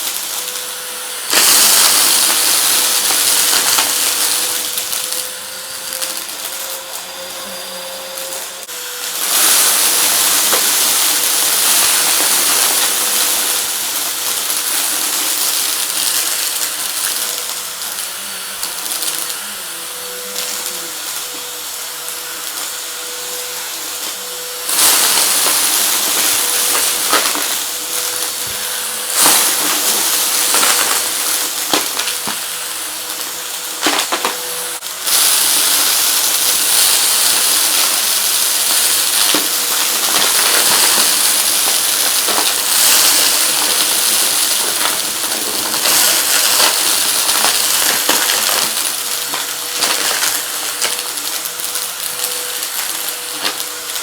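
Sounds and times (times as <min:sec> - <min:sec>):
vacuum cleaner running: 0:00.0 - 0:54.0
debris clicking and rattling: 0:01.3 - 0:05.4, 0:09.1 - 0:17.6, 0:24.7 - 0:34.4, 0:35.0 - 0:54.0.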